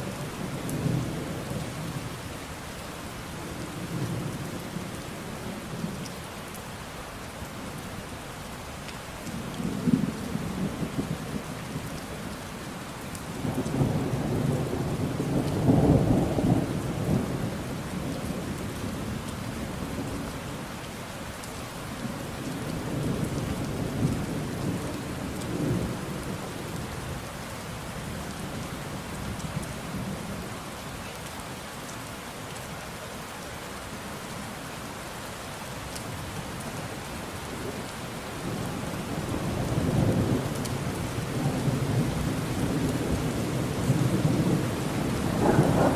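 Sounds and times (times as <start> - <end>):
steady rain: 0.0 - 45.9
thunder rumbling: 38.4 - 45.9.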